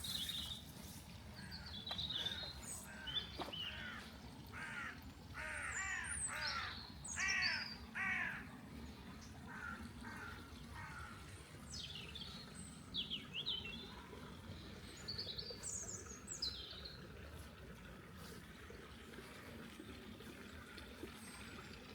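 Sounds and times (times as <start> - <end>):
crow cawing: 2.9 - 8.4, 9.5 - 11.1.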